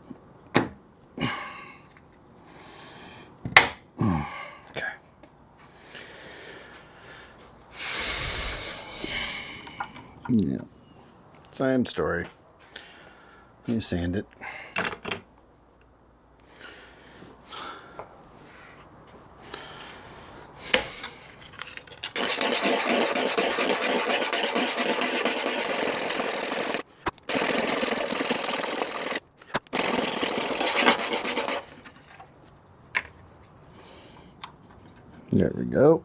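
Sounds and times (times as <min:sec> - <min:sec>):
sandpaper scratching metal: 0:22.1 - 0:31.9.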